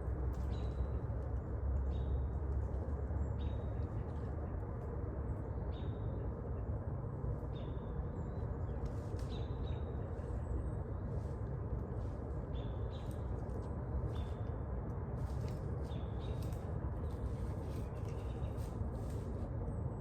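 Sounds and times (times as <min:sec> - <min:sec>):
low rushing background: 0:00.0 - 0:20.0.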